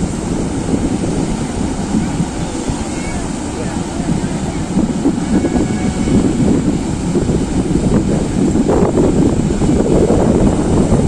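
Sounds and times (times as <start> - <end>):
flowing water rushing: 0.0 - 11.0.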